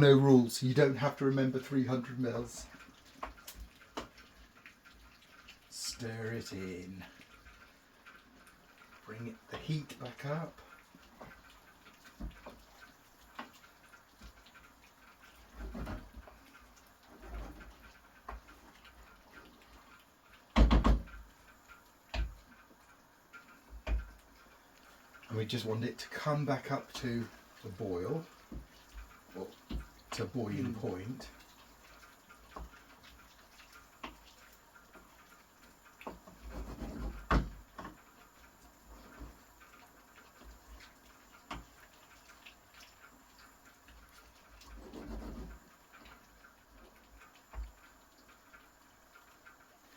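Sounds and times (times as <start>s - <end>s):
kitchen knocks and clicks: 20.5s - 21.1s.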